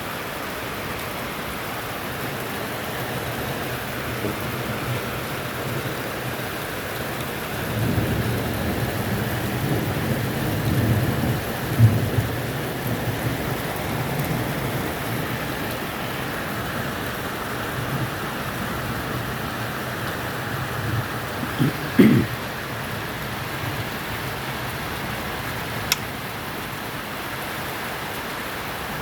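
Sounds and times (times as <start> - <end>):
steady rain: 0.0 - 29.0
rolling thunder: 7.7 - 15.0.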